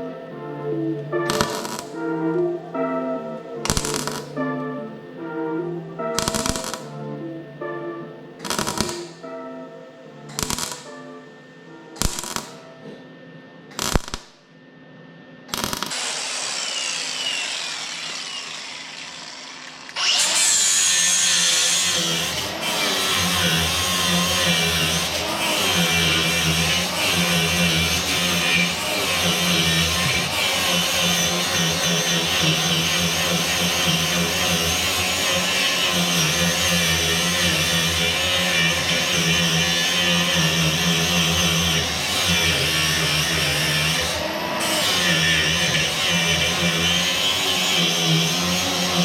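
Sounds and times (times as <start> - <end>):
background music: 0.0 - 14.6, 20.7 - 49.0
power tool on metal: 1.2 - 2.1, 3.6 - 4.4, 6.1 - 6.8, 8.4 - 9.4, 10.3 - 11.0, 12.0 - 12.6, 13.7 - 14.3, 15.5 - 49.0.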